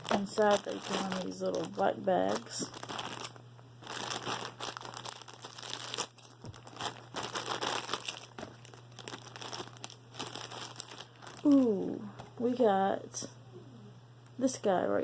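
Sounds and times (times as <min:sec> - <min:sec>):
plastic bag crinkling and rustling: 0:00.0 - 0:12.3.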